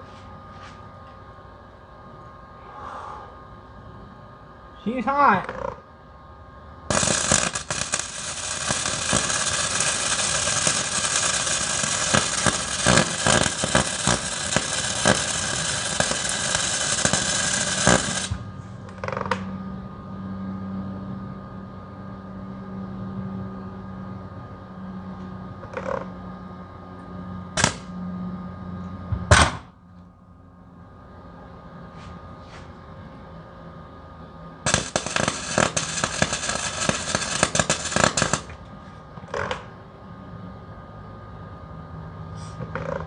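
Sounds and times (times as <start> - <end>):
steady low hum: 0.0 - 43.0
welding arc crackling: 6.9 - 19.5, 27.6 - 27.9, 34.6 - 38.6.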